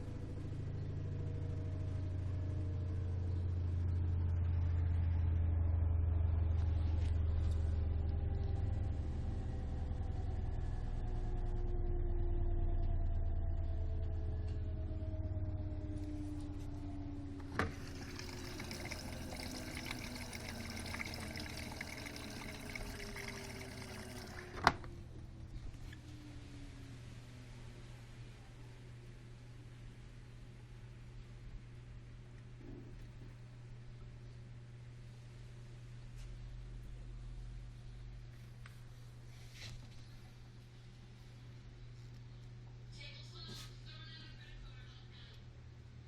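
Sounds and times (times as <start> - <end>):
washer-dryer drum spinning down: 16.8 - 25.4.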